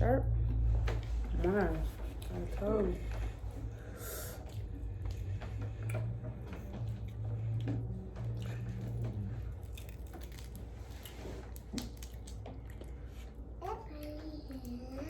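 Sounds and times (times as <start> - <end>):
wet squishing of food: 1.9 - 14.9
crab legs cracking: 9.2 - 10.8, 11.5 - 12.7.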